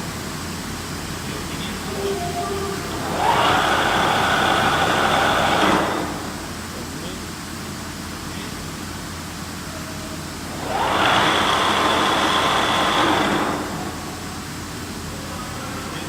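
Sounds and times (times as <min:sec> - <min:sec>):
milling machine spindle whine: 0:01.3 - 0:07.3, 0:10.3 - 0:15.1.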